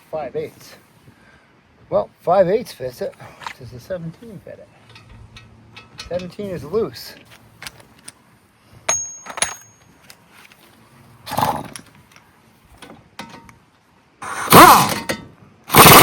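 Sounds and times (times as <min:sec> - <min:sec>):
metallic socket clinks: 0:08.9 - 0:10.2
power tool motor whirring: 0:14.2 - 0:15.0.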